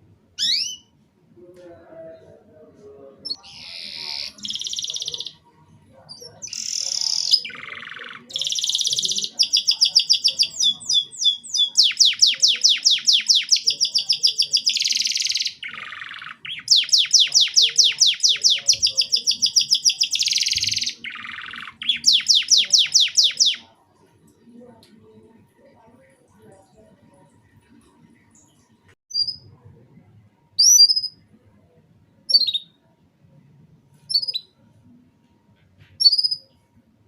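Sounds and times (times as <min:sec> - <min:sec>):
canary singing trills: 0:00.3 - 0:01.0, 0:03.2 - 0:23.8, 0:28.3 - 0:29.6, 0:30.6 - 0:31.2, 0:32.3 - 0:32.8, 0:34.0 - 0:34.6, 0:36.0 - 0:36.6.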